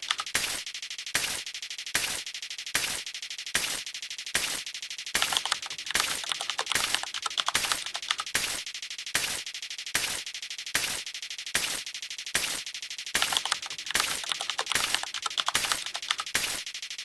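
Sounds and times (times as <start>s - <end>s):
fast run of counter clicks: 0.0s - 0.6s, 5.2s - 8.6s, 13.2s - 16.6s.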